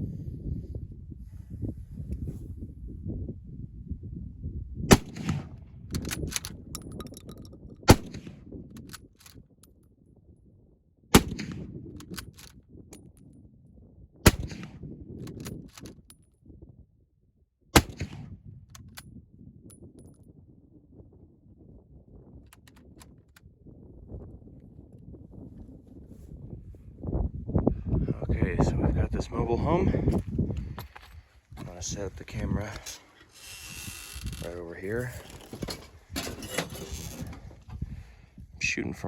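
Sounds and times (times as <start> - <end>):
wind rumble on microphone: 0.0 - 39.0
rifle shots: 4.9 - 6.4, 7.9 - 8.4, 11.2 - 12.2, 14.3 - 14.8, 17.8 - 18.3
rifle bolt clicks and knocks: 4.9 - 9.8, 11.2 - 13.2, 14.3 - 16.3, 17.8 - 19.1, 22.5 - 23.4, 35.1 - 37.8.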